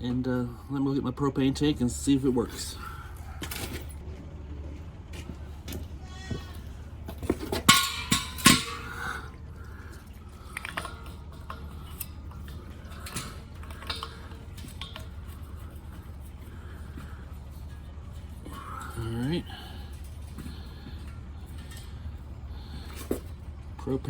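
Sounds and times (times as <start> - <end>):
low steady rumble: 0.0 - 24.0.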